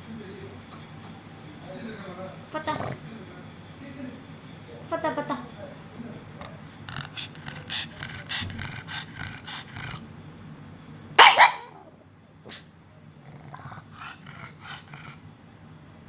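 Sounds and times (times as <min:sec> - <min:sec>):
dog grumbling and growling: 0:01.9 - 0:03.1, 0:06.3 - 0:10.0, 0:13.2 - 0:15.2
dog barking loudly: 0:11.2 - 0:11.9.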